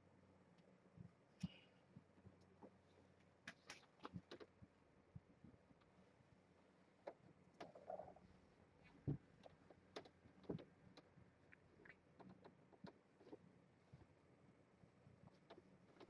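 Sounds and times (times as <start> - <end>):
kittens playing taps and clicks: 2.3 - 4.7, 7.0 - 8.2, 8.9 - 13.4, 15.3 - 16.0.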